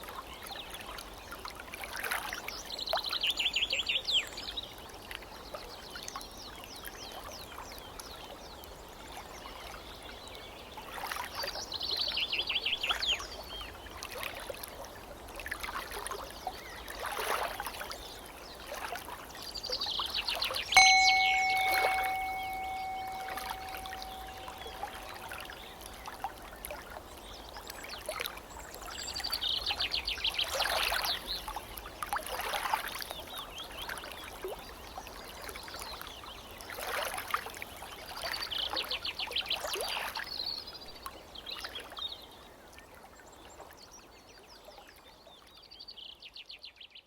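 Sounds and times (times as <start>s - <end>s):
struck bell tone: 20.8s - 25.8s
trickling stream: 20.8s - 26.1s.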